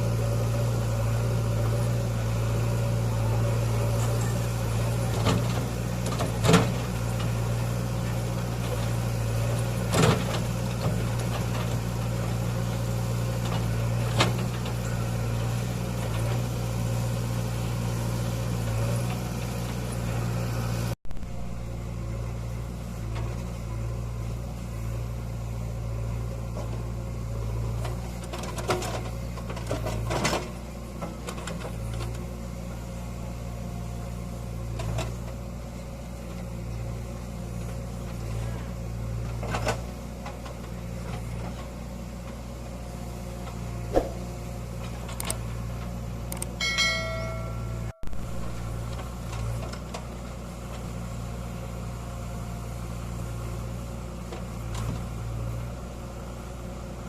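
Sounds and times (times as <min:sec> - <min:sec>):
diesel engine running: 0:00.0 - 0:57.0
sharp engine knocks: 0:43.9 - 0:44.5
short high tones: 0:46.6 - 0:48.7.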